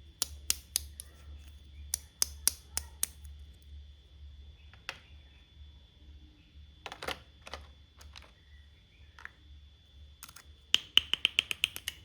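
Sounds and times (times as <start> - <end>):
plastic toy pieces tapping: 0.2 - 1.1, 2.0 - 3.3, 6.9 - 8.4, 10.2 - 12.0
sharp clicks: 10.2 - 12.0.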